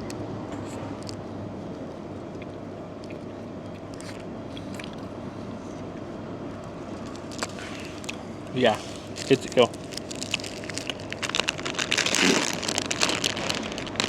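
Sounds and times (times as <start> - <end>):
low background hum: 0.0 - 14.0
person chewing: 2.2 - 5.8, 7.0 - 8.2, 8.8 - 14.0
wrapper rustling: 7.0 - 14.0.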